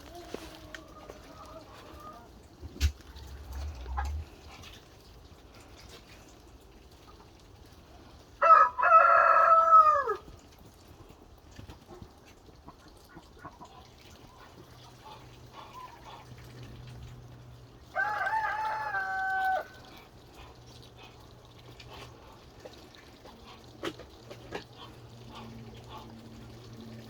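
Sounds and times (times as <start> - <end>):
hens clucking: 0.0 - 4.9, 11.5 - 27.0
rooster crowing: 8.4 - 10.2, 17.9 - 19.8.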